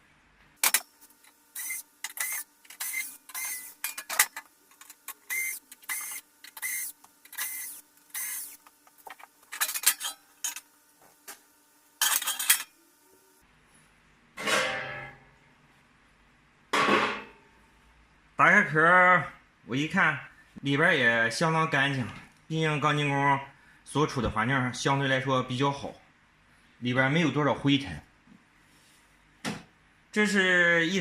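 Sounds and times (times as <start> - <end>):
screwdriver scraping screws: 1.6 - 10.6.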